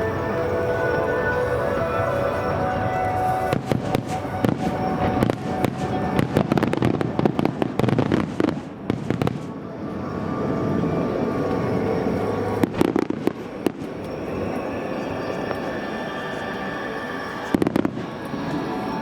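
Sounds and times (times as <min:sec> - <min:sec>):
music: 0:00.0 - 0:19.0
firework crackles and pops: 0:03.1 - 0:09.6, 0:12.6 - 0:14.3, 0:17.5 - 0:18.6.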